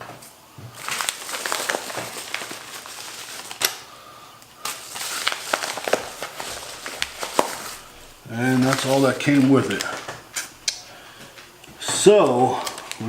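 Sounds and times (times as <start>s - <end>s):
plastic packaging crinkling: 0.0s - 13.0s.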